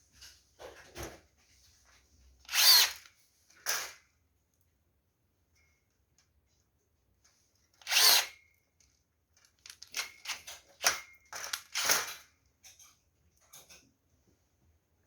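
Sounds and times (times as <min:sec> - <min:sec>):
power drill bursts: 0:02.5 - 0:03.0, 0:07.8 - 0:08.3.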